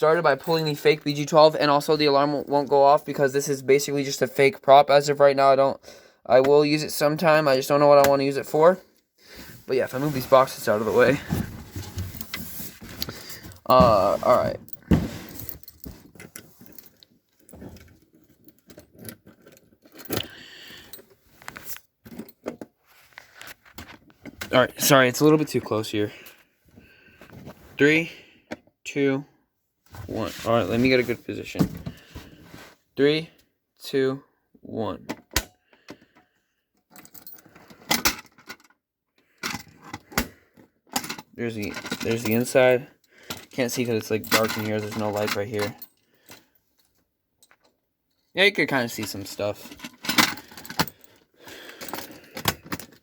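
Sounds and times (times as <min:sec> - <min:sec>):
objects being handled: 0:09.3 - 0:24.7, 0:43.2 - 0:47.8.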